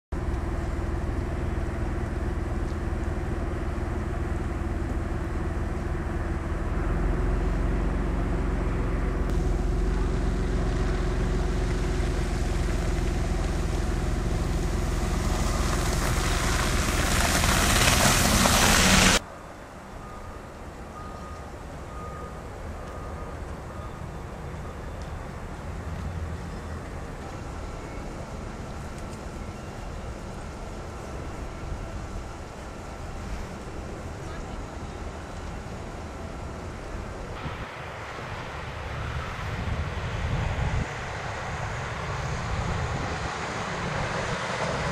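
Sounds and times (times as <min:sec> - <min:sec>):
vehicle engine running: 0:00.1 - 0:19.2
rushing noise: 0:06.4 - 0:21.1, 0:24.0 - 0:44.9
faint high beeps: 0:19.9 - 0:25.4.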